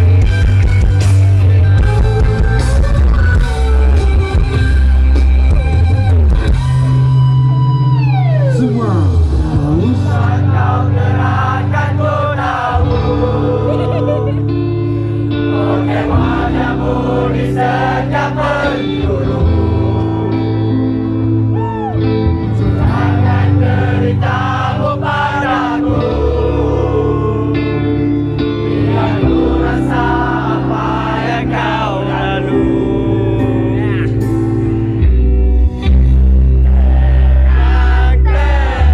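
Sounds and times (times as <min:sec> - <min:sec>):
crowd singing along: 0:00.0 - 0:01.0, 0:09.3 - 0:35.1, 0:36.5 - 0:38.9
live band playing pop-rock: 0:00.0 - 0:38.9.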